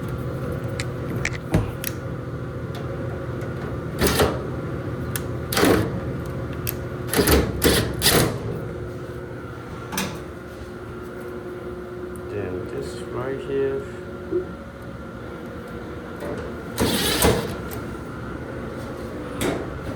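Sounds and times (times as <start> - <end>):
steady hum: 0.0 - 19.9.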